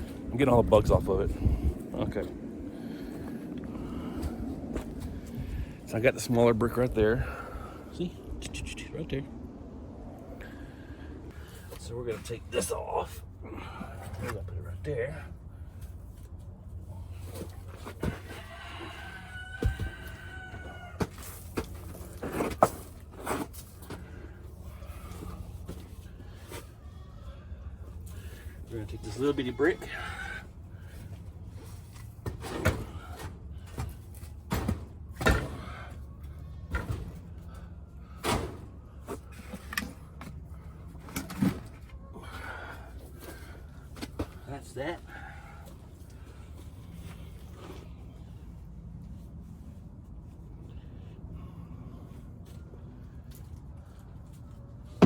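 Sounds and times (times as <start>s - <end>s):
rooster crowing: 18.1s - 21.3s.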